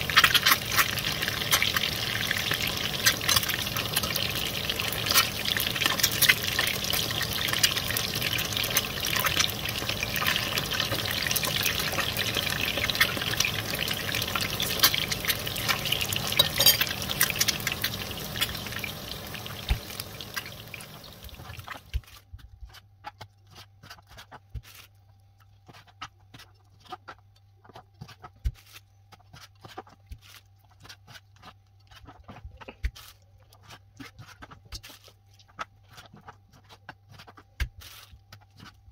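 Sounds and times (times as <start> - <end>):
liquid pouring: 0.0 - 21.9.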